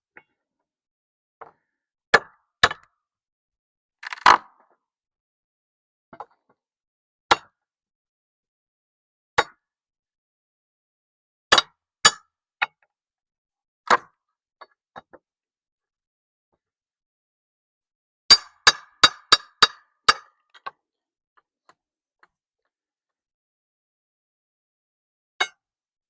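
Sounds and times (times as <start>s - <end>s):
tool knocking wood and metal: 18.3s - 20.8s.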